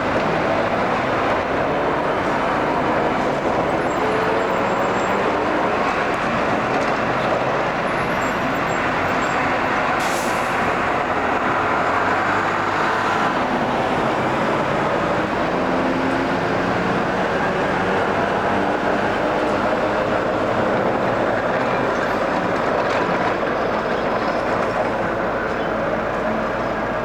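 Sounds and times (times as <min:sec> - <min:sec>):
large vehicle engine running: 0:00.0 - 0:27.0.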